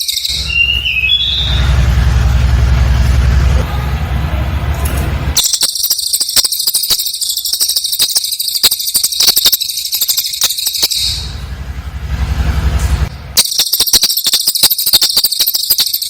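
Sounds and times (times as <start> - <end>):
bird chattering trill: 0.0 - 1.6, 5.4 - 11.3, 13.4 - 16.0
low pulsing buzz: 0.3 - 5.4, 10.8 - 13.4.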